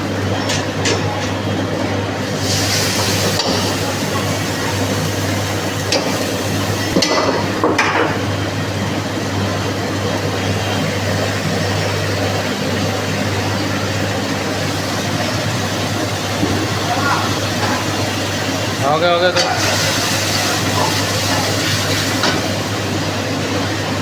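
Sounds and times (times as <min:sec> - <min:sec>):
low kitchen hum: 0:00.0 - 0:24.0
utensils clinking on cookware: 0:19.2 - 0:22.5.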